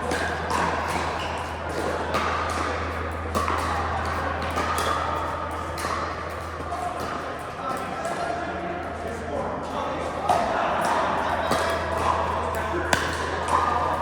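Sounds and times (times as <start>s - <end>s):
balls bouncing on court: 0.0s - 7.5s, 10.2s - 14.0s
paddles hitting plastic balls: 12.8s - 14.0s.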